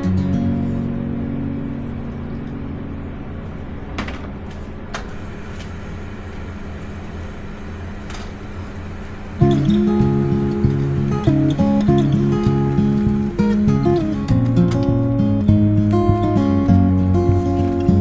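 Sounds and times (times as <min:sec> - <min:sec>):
kitchen appliance humming: 0:05.0 - 0:14.5.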